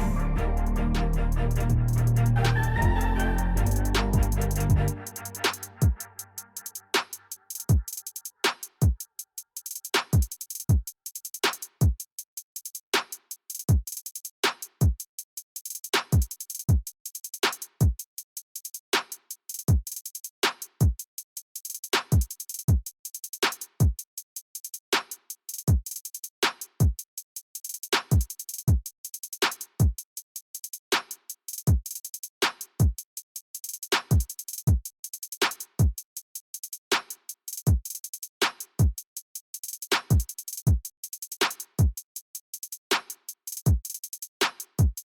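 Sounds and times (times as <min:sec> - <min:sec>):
electronic music: 0:00.0 - 0:06.6
hi-hat ticks: 0:00.6 - 0:02.4, 0:03.6 - 0:45.0
deep kick drums: 0:04.2 - 0:05.0.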